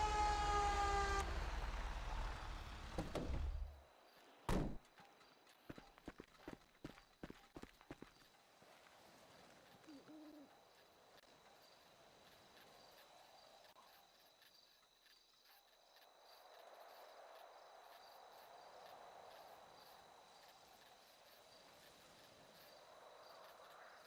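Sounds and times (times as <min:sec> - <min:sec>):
faint hiss: 0:08.5 - 0:24.0.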